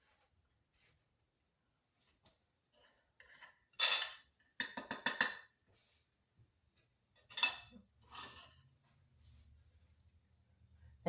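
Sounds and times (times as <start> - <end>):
spoon scraping a dish: 2.8 - 4.3.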